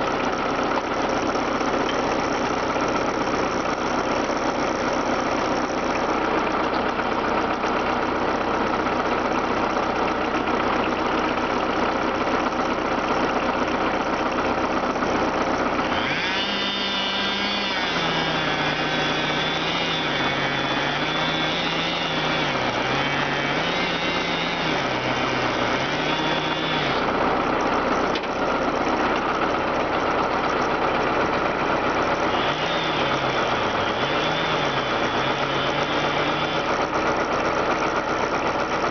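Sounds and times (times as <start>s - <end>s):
engine running: 0.0s - 38.9s
chainsaw revving and cutting: 15.6s - 27.2s, 31.6s - 37.0s.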